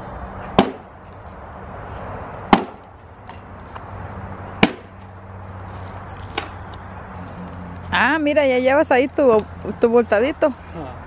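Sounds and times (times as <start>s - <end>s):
axe chopping wood: 0.5s - 0.9s, 2.5s - 3.4s, 4.6s - 4.9s.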